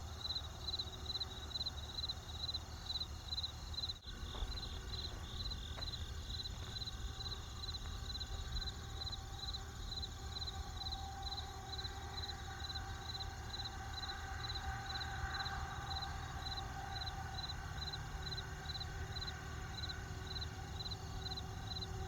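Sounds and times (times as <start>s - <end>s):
cricket chirping: 0.0s - 22.0s
low rumble: 4.0s - 12.8s.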